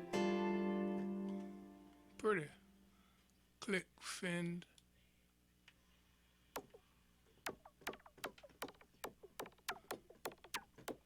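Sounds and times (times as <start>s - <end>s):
clicky synth percussion hits: 6.6s - 6.8s, 7.5s - 11.0s.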